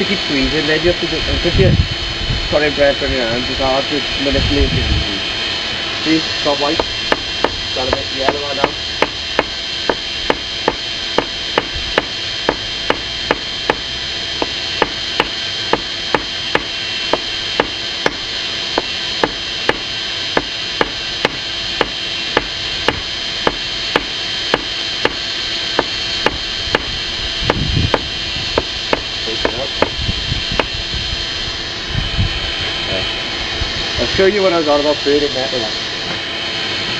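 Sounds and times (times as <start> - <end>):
hammer striking hot steel: 6.5 - 30.0, 30.6 - 30.8.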